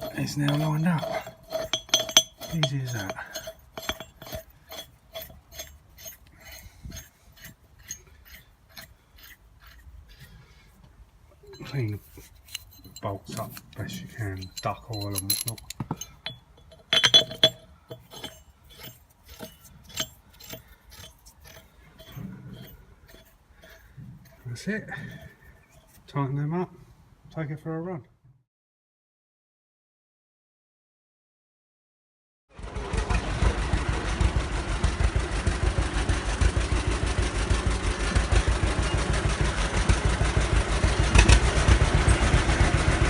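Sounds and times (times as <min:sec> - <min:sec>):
tractor engine pulsing: 0:00.0 - 0:10.7, 0:32.6 - 0:43.0
metal bolts scraping and clinking: 0:00.0 - 0:26.2.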